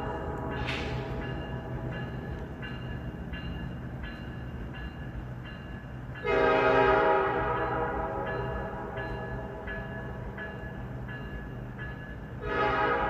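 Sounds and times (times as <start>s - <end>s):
diesel locomotive running: 0.0s - 13.0s
air horn blast: 6.2s - 8.3s, 12.4s - 13.0s.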